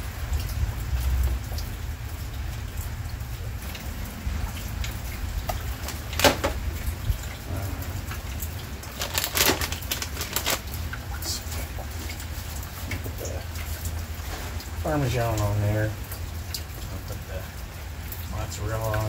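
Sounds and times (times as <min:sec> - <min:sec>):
steady rain: 0:00.0 - 0:19.0.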